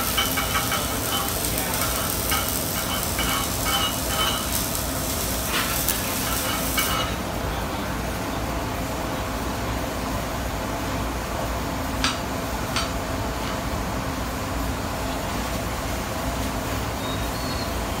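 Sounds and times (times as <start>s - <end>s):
welding arc hissing: 0.0s - 7.4s
low shop rumble: 0.0s - 18.0s.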